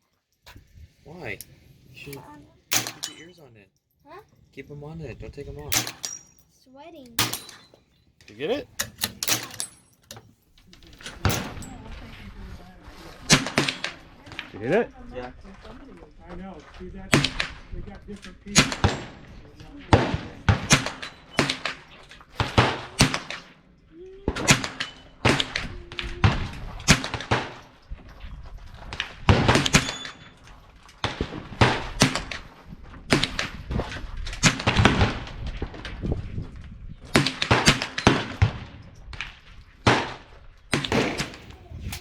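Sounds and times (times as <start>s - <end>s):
rifle shots: 2.7s - 3.3s, 5.7s - 6.2s, 9.0s - 9.7s, 18.6s - 19.2s, 40.7s - 42.0s.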